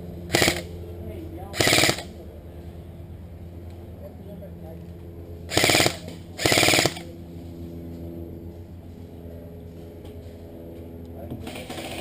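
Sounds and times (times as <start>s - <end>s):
steady low hum: 0.0s - 12.0s
airsoft gun rapid shots: 0.3s - 0.7s, 1.6s - 2.1s, 5.5s - 7.1s.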